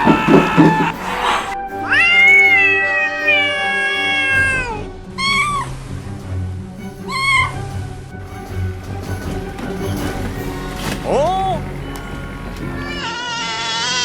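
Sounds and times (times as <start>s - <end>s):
background music: 0.0s - 14.0s
animal calls: 5.2s - 5.7s.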